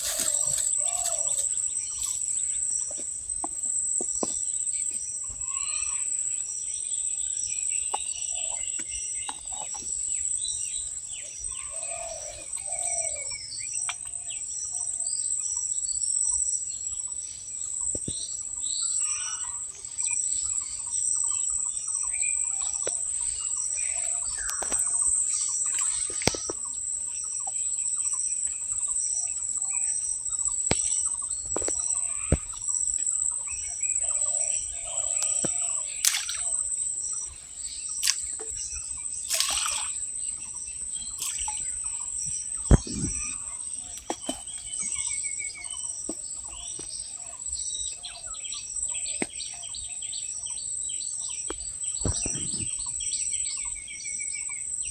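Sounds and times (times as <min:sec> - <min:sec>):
birds chirping and calling: 0:00.0 - 0:03.5, 0:04.2 - 0:15.0, 0:18.8 - 0:54.7.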